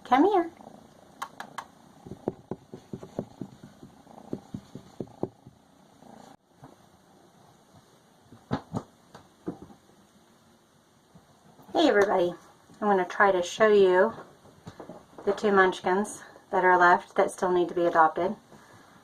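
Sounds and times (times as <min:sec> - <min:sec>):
kitten purring: 0:00.2 - 0:06.4.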